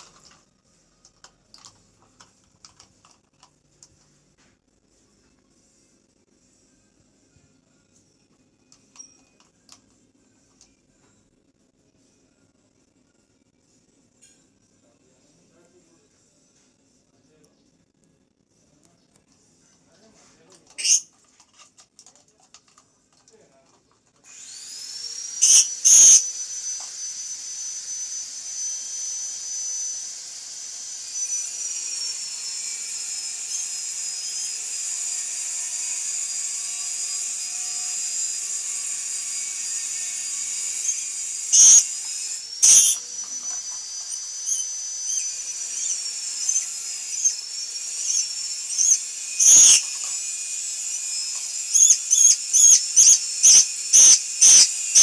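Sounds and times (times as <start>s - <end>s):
parrot shrieking: 20.8s - 21.1s, 25.4s - 26.4s, 40.8s - 42.0s, 42.6s - 47.4s, 48.0s - 50.0s, 51.7s - 55.0s.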